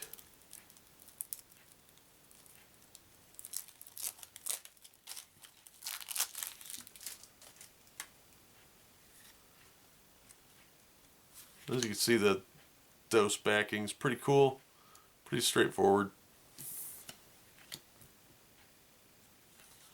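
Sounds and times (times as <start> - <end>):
plastic wrapper crinkling and tearing: 0.0 - 8.1.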